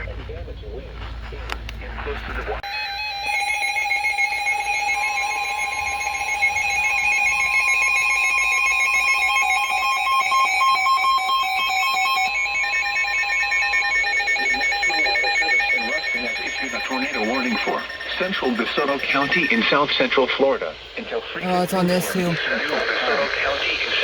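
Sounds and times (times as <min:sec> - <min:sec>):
steady warning alarm tone: 0:02.7 - 0:19.6
warbling electronic alarm: 0:02.7 - 0:19.6.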